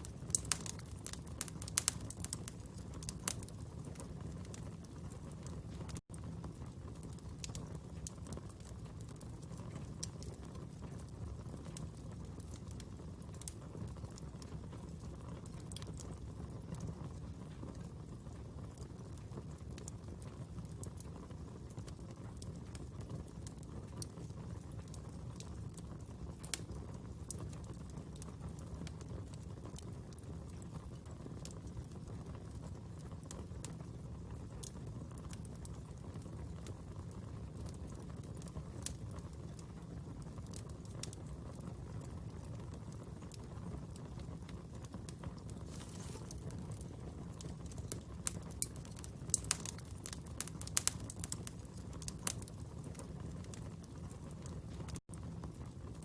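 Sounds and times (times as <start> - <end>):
fire crackling and popping: 0.0 - 56.0.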